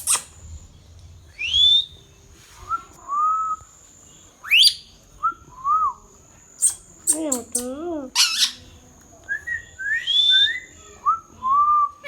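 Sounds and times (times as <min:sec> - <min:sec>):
parrot whistling and chirping: 0:00.0 - 0:00.4, 0:04.5 - 0:04.9, 0:08.2 - 0:08.6, 0:09.4 - 0:10.8
parrot shrieking: 0:08.2 - 0:08.6.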